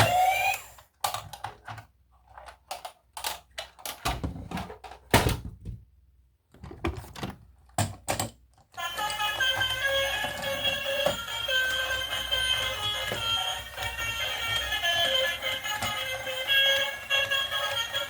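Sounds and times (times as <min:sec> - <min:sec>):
plastic toys clicking: 0:00.2 - 0:04.0
music: 0:08.8 - 0:18.0.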